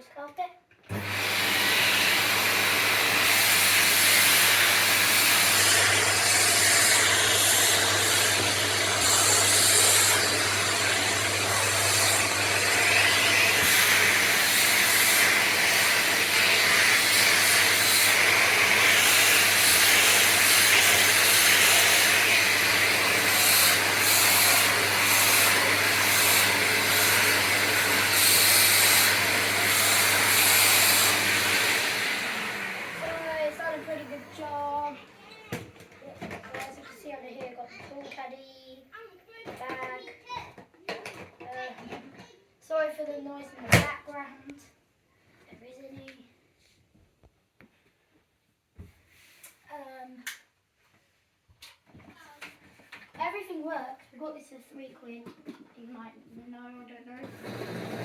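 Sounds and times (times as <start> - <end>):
vacuum cleaner running: 0.9 - 36.7, 57.2 - 58.0.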